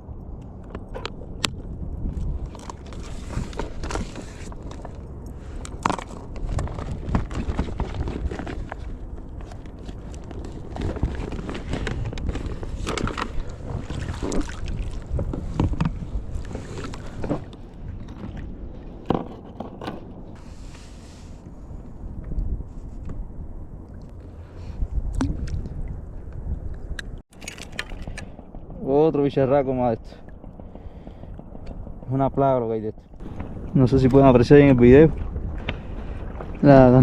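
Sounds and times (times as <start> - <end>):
wind rumbling on microphone: 0.0 - 37.0
water sloshing: 0.8 - 21.0, 26.8 - 28.8, 32.9 - 37.0.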